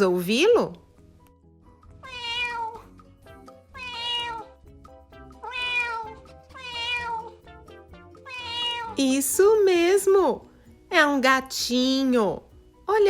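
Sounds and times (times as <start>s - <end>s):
cat meowing: 2.0s - 3.0s, 3.7s - 4.6s, 5.4s - 7.4s, 8.2s - 9.0s.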